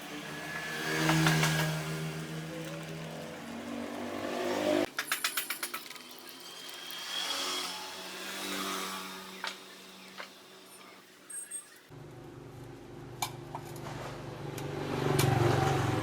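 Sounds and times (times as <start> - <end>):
small electric motor running: 5.6 - 11.0.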